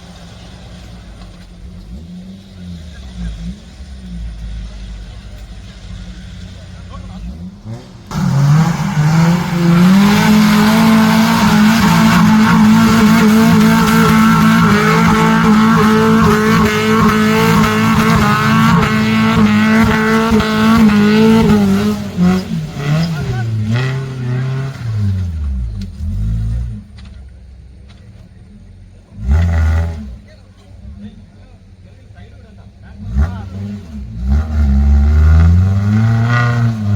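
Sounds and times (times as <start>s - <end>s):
vehicle engine revving: 0.0s - 36.9s.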